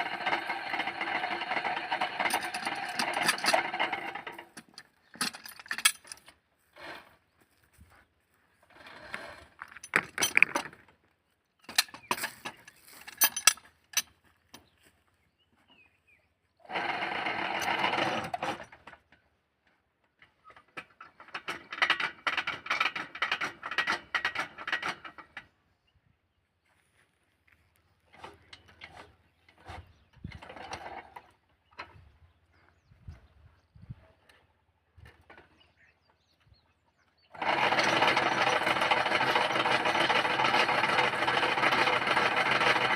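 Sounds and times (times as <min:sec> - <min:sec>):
metalworking crackling and rattling: 0:00.0 - 0:08.0, 0:08.6 - 0:14.7, 0:16.7 - 0:19.2, 0:20.1 - 0:25.5, 0:28.0 - 0:32.2, 0:37.3 - 0:42.9.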